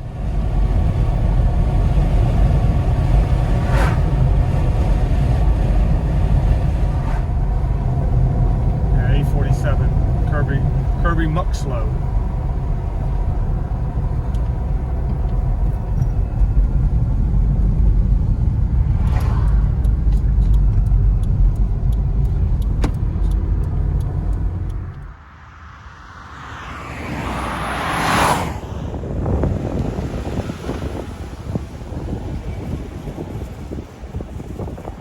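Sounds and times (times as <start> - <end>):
car passing with tyre whoosh: 0.0 - 9.9, 17.8 - 20.4, 23.3 - 35.0
engine and road noise drone: 0.0 - 35.0.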